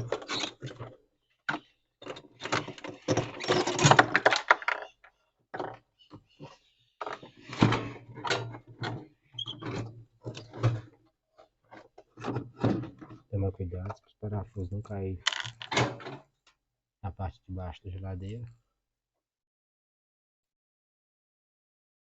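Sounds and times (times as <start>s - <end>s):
loose screws rattling: 15.3s - 15.8s.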